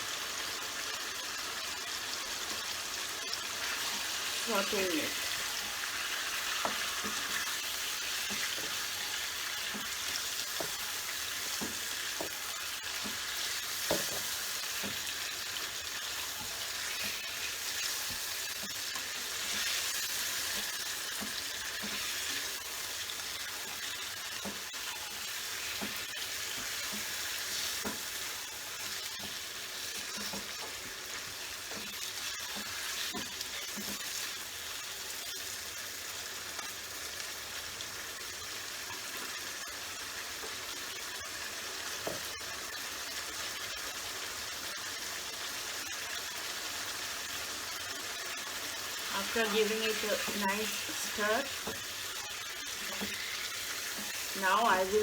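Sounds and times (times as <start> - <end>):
chicken sizzling in hot oil: 0.0 - 55.0
stirring knocks and scrapes on pan: 6.4 - 34.4, 49.0 - 55.0.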